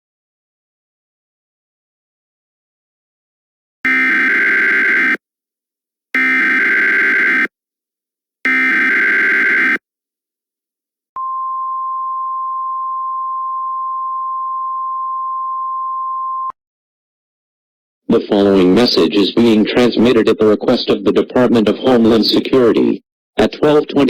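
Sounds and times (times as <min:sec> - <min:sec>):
steady attention tone: 0:03.9 - 0:05.2, 0:06.2 - 0:07.5, 0:08.5 - 0:09.8.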